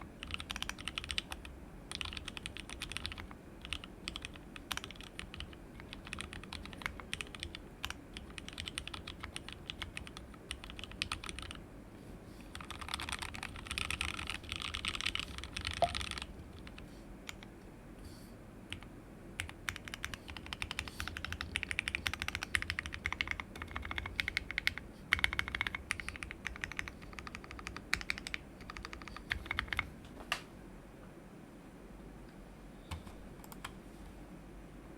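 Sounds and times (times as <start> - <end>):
typing on a mechanical keyboard: 0.2 - 11.6, 12.5 - 17.5, 18.7 - 29.9.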